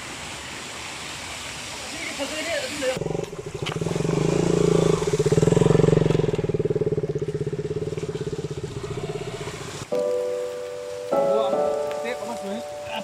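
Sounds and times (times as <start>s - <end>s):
motorcycle engine running: 3.0s - 9.9s
music with held tones: 9.9s - 13.0s.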